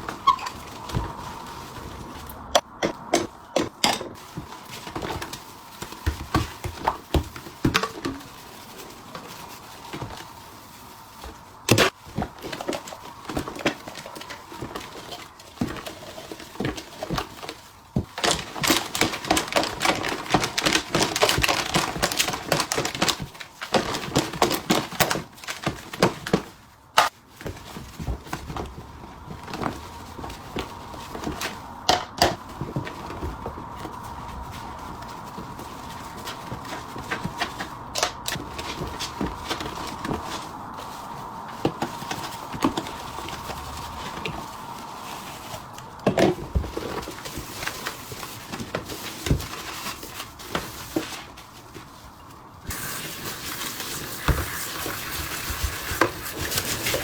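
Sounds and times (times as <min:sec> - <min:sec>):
pots and utensils clattering: 0:02.5 - 0:05.3.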